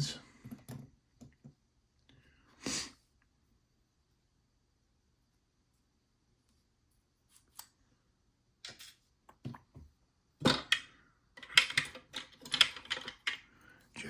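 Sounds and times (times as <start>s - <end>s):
padlock parts clicking and clattering: 10.6s - 13.5s.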